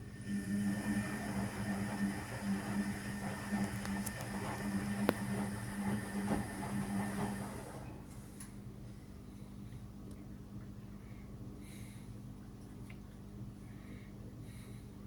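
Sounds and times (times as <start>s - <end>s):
washing machine motor hum: 0.0s - 11.6s.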